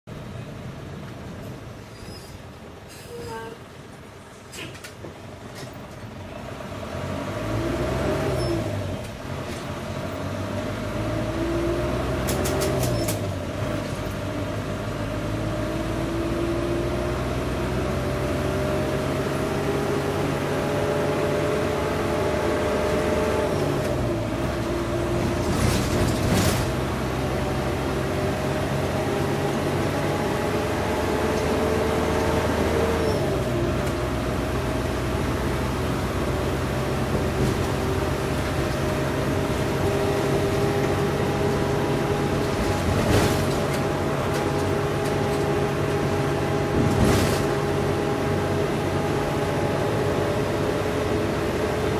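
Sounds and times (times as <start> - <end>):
road rumble: 0.0 - 51.9
bus engine changing gears: 0.1 - 51.9.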